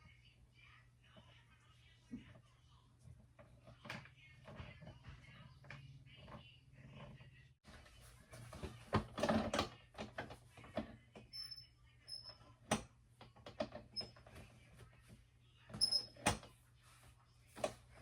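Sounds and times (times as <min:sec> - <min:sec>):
chair parts clicking and rattling: 0:08.6 - 0:11.0, 0:12.7 - 0:14.5.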